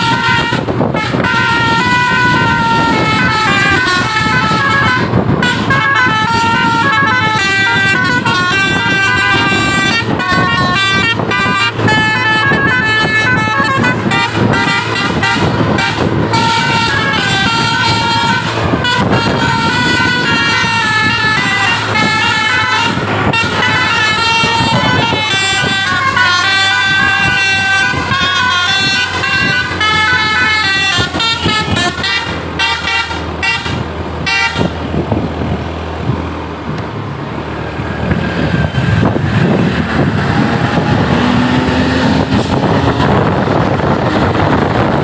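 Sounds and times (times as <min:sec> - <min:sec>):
engine and road noise: 0:00.0 - 0:45.0
multi-tone bus horn tune: 0:00.0 - 0:45.0.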